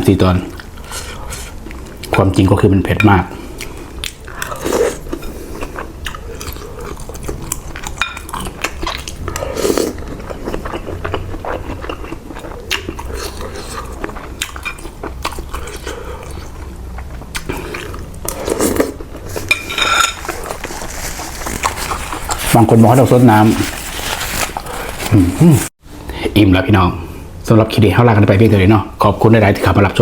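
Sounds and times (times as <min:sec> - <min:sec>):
chewing and biting: 0:03.6 - 0:19.0.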